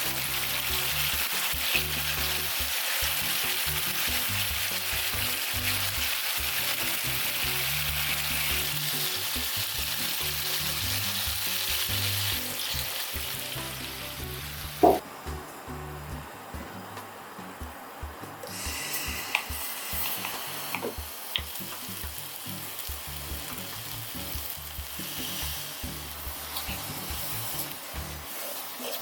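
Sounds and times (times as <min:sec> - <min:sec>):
food sizzling in a frying pan: 0:00.0 - 0:15.0, 0:18.5 - 0:29.0
sharp knock: 0:14.8 - 0:15.0.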